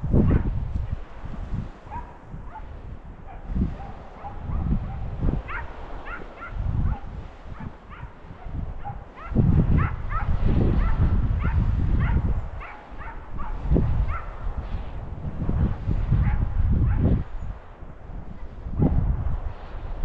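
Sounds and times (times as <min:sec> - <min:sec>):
hounds yelping: 0:05.5 - 0:08.2, 0:08.8 - 0:14.3.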